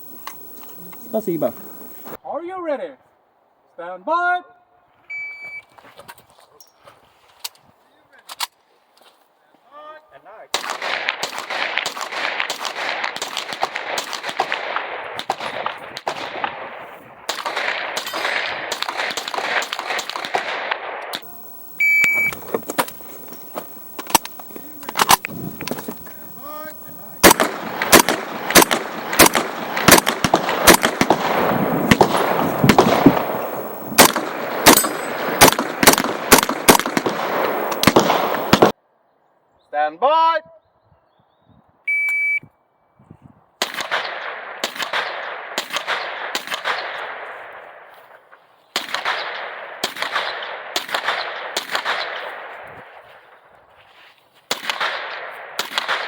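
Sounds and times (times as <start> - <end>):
carbine gunshots: 0.0 - 2.2, 10.5 - 38.8, 43.6 - 47.9, 48.8 - 53.5, 54.5 - 56.0.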